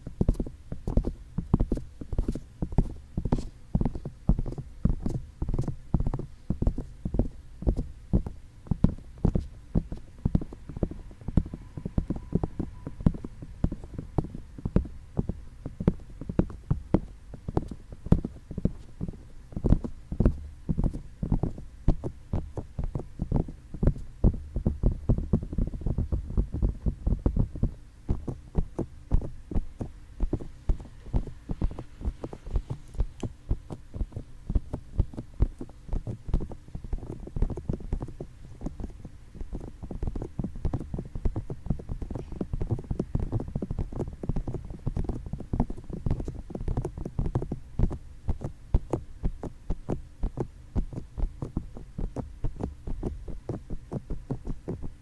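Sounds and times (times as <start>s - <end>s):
fingertips tapping on microphones: 0.0s - 55.0s.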